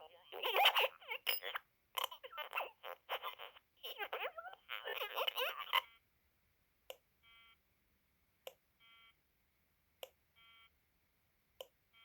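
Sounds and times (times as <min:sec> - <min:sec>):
garbled toy voice: 0:00.0 - 0:05.9.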